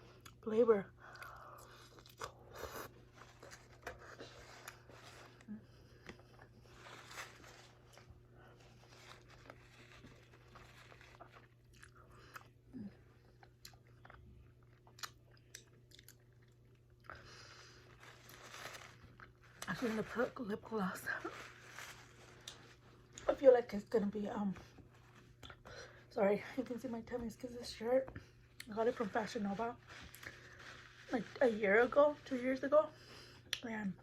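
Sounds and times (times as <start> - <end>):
chewing and crunching: 1.0 - 19.8.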